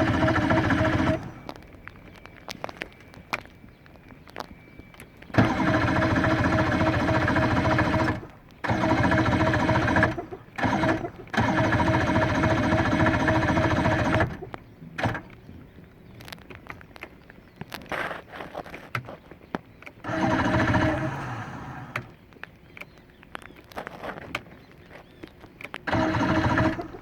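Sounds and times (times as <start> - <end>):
outboard electric starter whirring: 0.0 - 3.1, 5.1 - 15.5, 19.8 - 22.2, 24.9 - 27.0.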